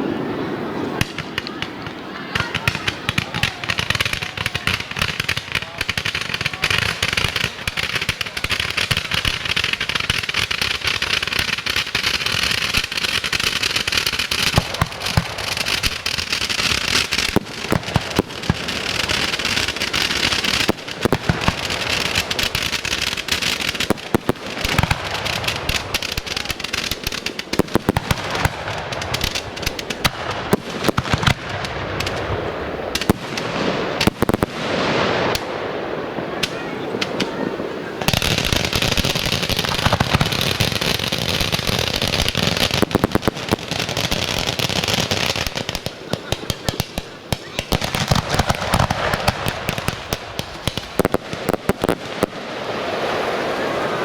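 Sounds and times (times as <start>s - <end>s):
fireworks crackling and banging: 0.0s - 54.0s.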